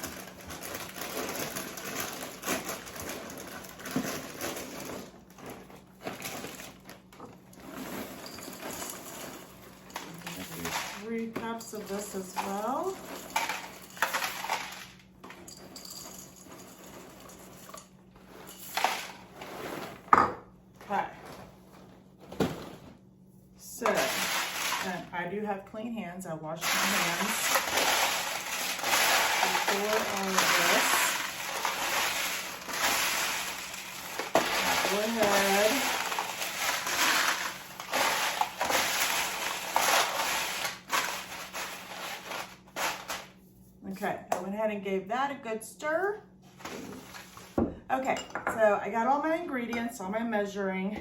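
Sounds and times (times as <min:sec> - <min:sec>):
cereal pouring into bowl: 0:00.0 - 0:05.1, 0:07.6 - 0:11.1, 0:23.8 - 0:25.0, 0:26.6 - 0:43.3.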